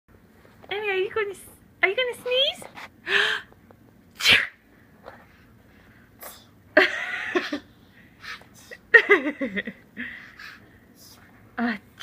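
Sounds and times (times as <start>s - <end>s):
person sneezing: 4.2s - 4.6s.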